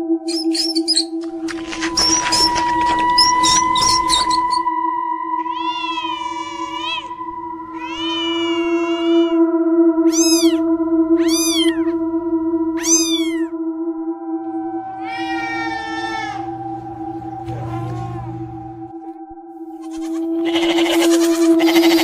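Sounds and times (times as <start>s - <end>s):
cat meowing: 5.3s - 12.0s, 12.8s - 13.5s, 14.5s - 18.9s, 19.8s - 22.0s.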